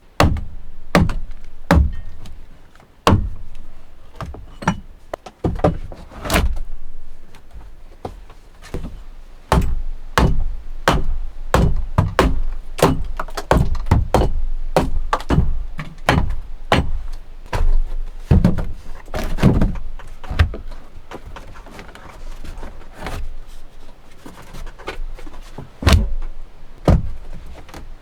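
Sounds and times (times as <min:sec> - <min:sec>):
tool striking wood: 0:00.2 - 0:02.4, 0:03.0 - 0:07.1, 0:09.5 - 0:19.7.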